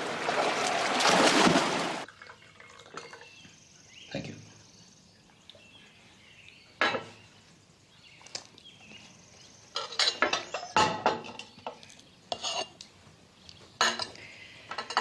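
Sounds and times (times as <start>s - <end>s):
cutlery clinking on plates: 9.8s - 12.7s, 13.8s - 15.0s.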